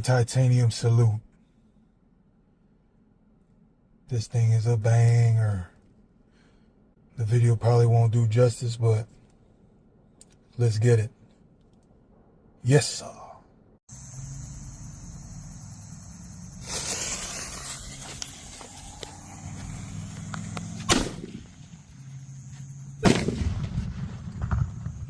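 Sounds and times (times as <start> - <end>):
firework fuse hiss: 15.8 - 21.8
firework bangs: 16.6 - 21.9, 23.0 - 25.0
rumble after bang: 20.8 - 21.8, 23.0 - 25.0.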